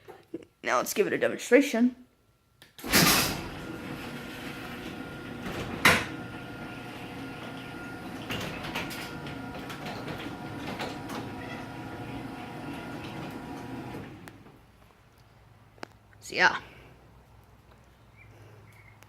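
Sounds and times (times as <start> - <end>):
garage door motor humming: 2.8 - 14.6
garage door opener clicks: 2.8 - 14.6.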